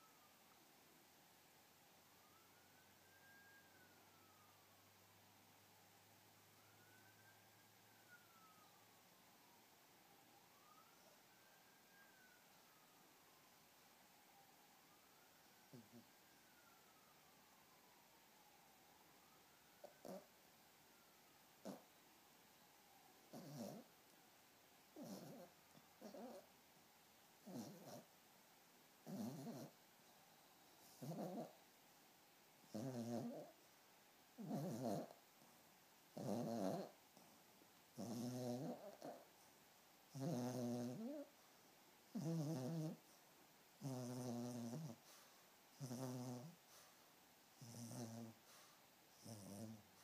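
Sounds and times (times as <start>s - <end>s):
puppy snoring: 15.7s - 16.1s, 19.8s - 20.3s, 21.6s - 21.9s, 23.3s - 23.9s, 25.0s - 26.5s, 27.4s - 28.1s, 29.0s - 29.8s, 30.8s - 31.6s, 32.7s - 33.6s, 34.4s - 35.2s, 36.1s - 37.3s, 38.0s - 39.3s, 40.1s - 41.3s, 42.1s - 43.2s, 43.8s - 46.9s, 47.6s - 50.0s.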